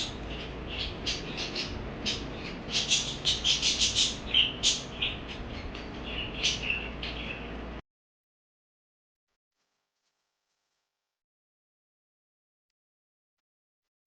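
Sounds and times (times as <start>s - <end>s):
parakeets chirping: 0.0s - 7.7s.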